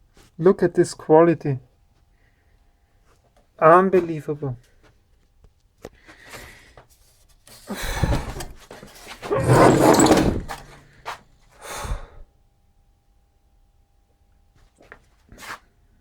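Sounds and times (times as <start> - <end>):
metal parts scraping and rattling: 8.0 - 10.8.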